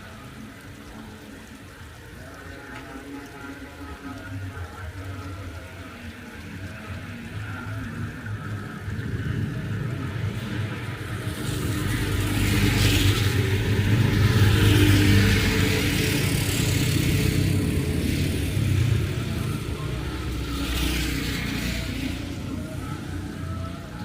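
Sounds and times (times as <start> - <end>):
tyres hissing through water: 0.0 - 24.0
vehicle engine hum: 0.0 - 24.0.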